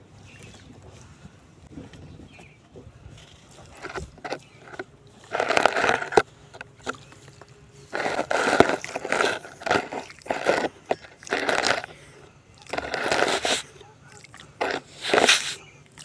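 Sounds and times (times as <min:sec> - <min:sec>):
sand crunching: 0:03.2 - 0:15.8.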